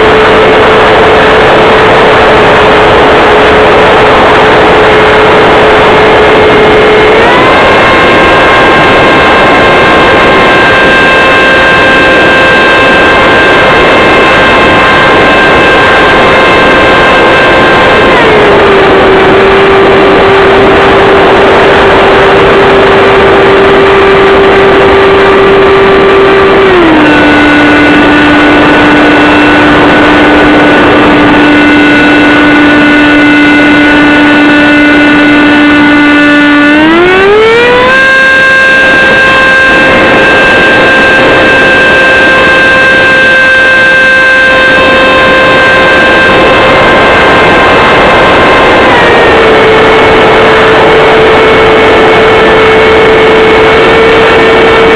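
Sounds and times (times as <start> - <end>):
electric ducted fan whine: 0.0 - 54.9.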